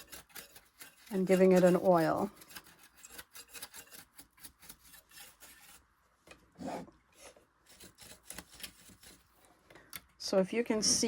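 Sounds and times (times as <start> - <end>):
scratching and rubbing: 0.0 - 5.9, 6.6 - 9.5.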